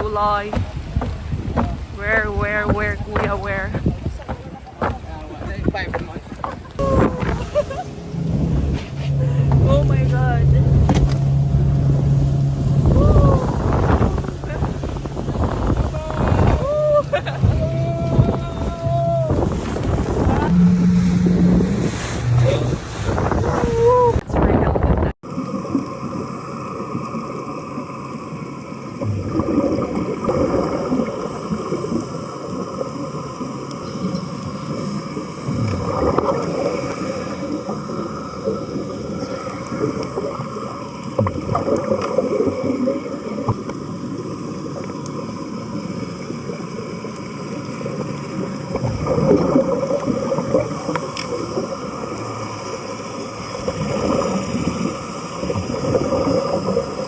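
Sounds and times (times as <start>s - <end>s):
muffled underwater noise: 0.0s - 12.2s
air bubbles gurgling: 28.8s - 33.1s, 34.7s - 57.0s.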